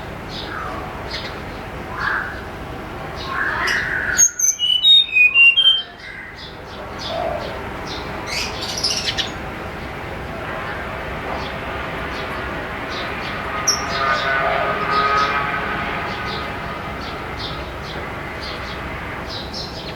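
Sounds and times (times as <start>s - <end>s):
bird whistling flute-like notes: 3.3s - 6.4s.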